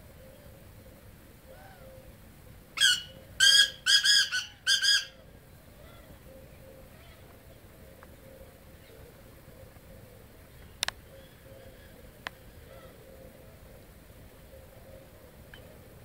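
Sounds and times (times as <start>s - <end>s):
bird harsh grating call: 2.8s - 5.2s.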